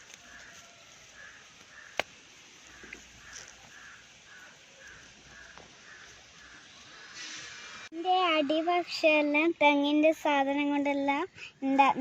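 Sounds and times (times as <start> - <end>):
bird calling: 0.0 - 8.7.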